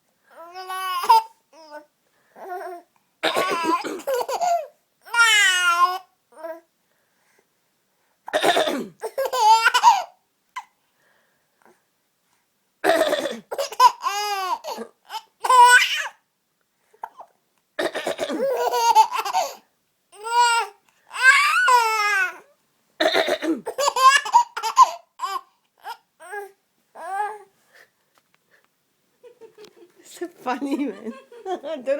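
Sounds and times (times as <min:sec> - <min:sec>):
woman coughing: 0:03.2 - 0:04.4, 0:08.3 - 0:10.0, 0:12.8 - 0:13.8, 0:17.8 - 0:18.6, 0:23.0 - 0:23.9
baby laughing: 0:03.5 - 0:05.4, 0:09.0 - 0:10.1, 0:13.6 - 0:16.1, 0:18.3 - 0:19.6, 0:23.7 - 0:26.0.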